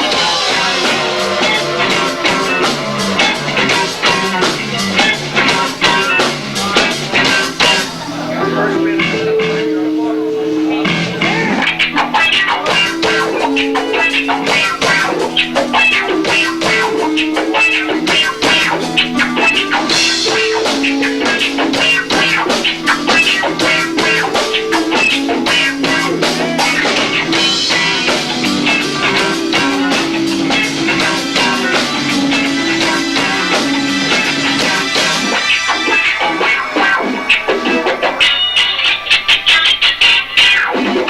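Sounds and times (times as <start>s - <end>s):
fast dense drumming: 0.0s - 8.0s
guitar riff: 0.0s - 41.0s.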